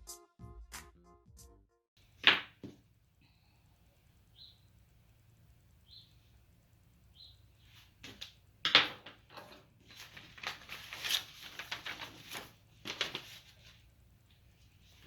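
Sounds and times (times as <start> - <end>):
yarn rustling through canvas: 9.8 - 15.0.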